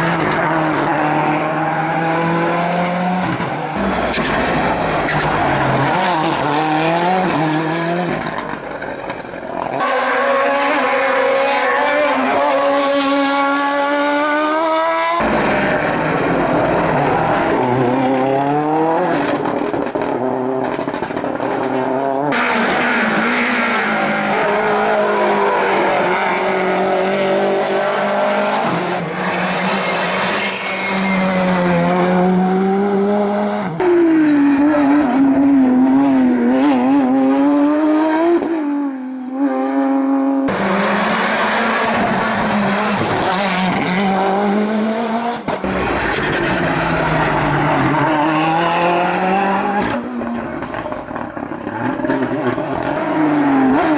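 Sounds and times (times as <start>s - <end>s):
car engines revving: 0.0s - 53.9s
tyre squeal: 3.8s - 6.4s, 29.0s - 32.1s.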